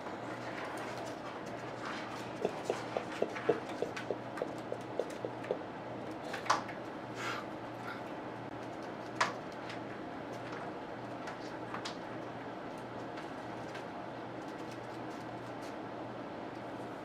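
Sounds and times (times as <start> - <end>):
steady low hum: 0.0 - 8.7.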